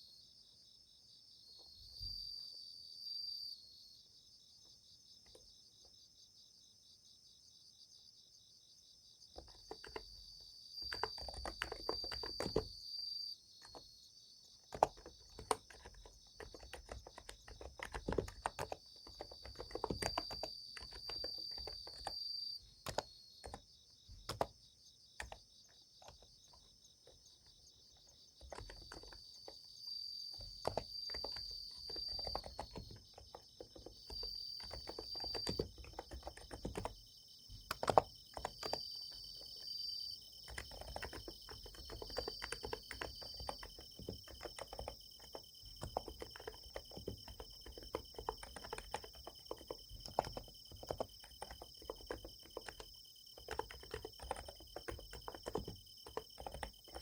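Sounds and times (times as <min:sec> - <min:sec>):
insects chirping: 0:00.0 - 0:57.0
soft keyboard key clicks: 0:10.8 - 0:12.7, 0:14.7 - 0:22.2, 0:22.8 - 0:24.5, 0:28.4 - 0:29.2, 0:30.4 - 0:37.0, 0:37.6 - 0:39.8.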